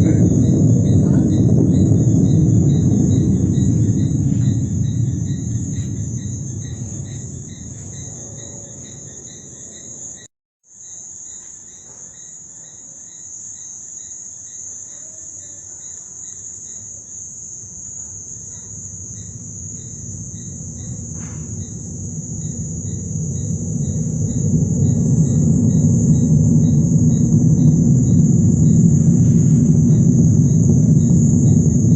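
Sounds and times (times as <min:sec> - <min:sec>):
deep rumble of thunder: 0:00.0 - 0:10.3, 0:17.2 - 0:31.9
insect chorus chirping: 0:00.0 - 0:31.9.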